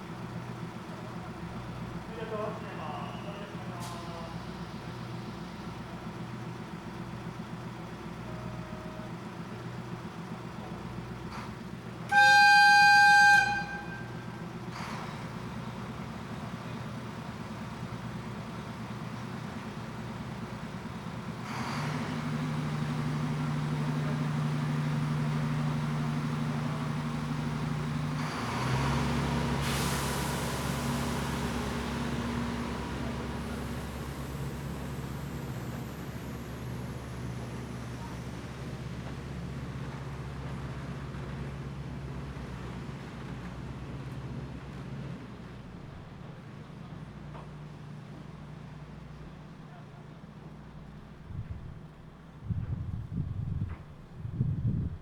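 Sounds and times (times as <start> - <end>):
diesel engine idling and pulling away: 0.0 - 55.0
train horn blast: 12.1 - 14.4.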